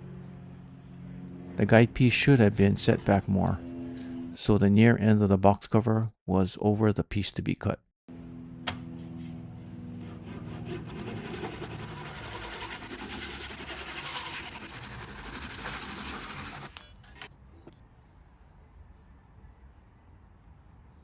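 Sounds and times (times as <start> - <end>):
hand saw cutting wood: 9.9 - 17.3.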